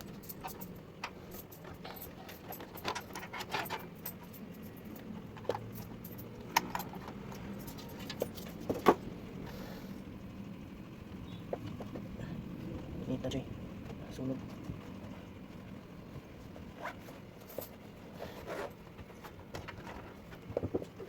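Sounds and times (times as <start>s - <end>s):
computer parts clicking and rattling: 0.0s - 9.0s
low steady hum: 0.0s - 21.0s.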